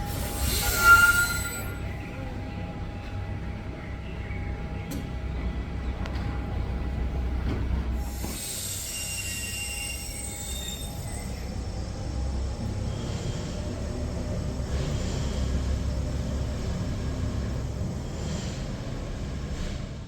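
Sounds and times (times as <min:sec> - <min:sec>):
train wheels squealing: 0:00.0 - 0:02.1, 0:08.0 - 0:12.2
metro train rumbling: 0:00.0 - 0:20.0.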